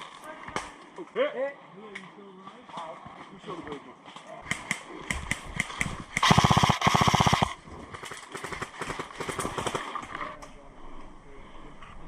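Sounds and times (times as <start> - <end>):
airsoft shots and bb snaps: 4.5 - 7.6
airsoft rifle full-auto burst: 6.2 - 7.6.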